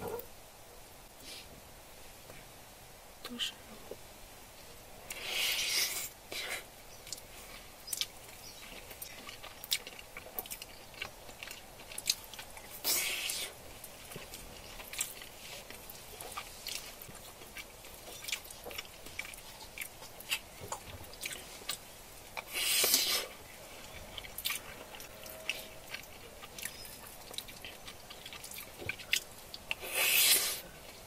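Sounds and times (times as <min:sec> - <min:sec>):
close-up chewing: 0:05.1 - 0:31.0
short hissing bursts: 0:22.5 - 0:23.3, 0:29.8 - 0:30.7.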